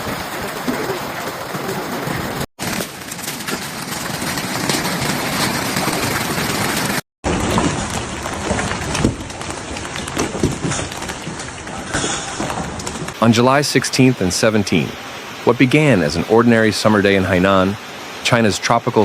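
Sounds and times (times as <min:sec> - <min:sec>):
hail and rain pelting surfaces: 0:00.0 - 0:13.3.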